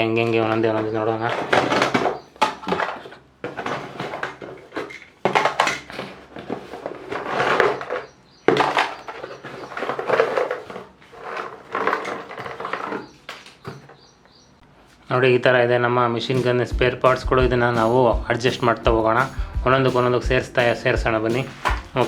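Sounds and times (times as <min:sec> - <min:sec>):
plastic pieces knocking: 0:00.0 - 0:14.1, 0:16.4 - 0:22.0
packaging rustling and crinkling: 0:01.3 - 0:14.0.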